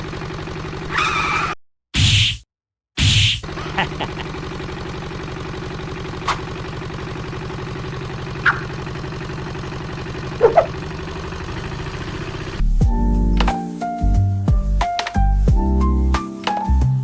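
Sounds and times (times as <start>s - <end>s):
engine idling: 0.0s - 0.9s, 3.5s - 13.6s
piano music: 12.8s - 17.0s.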